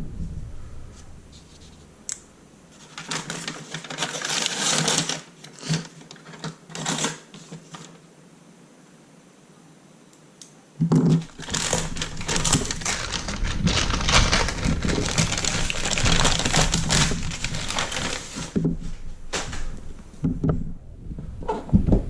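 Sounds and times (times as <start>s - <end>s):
packaging crinkling: 2.7s - 8.0s, 11.2s - 19.7s.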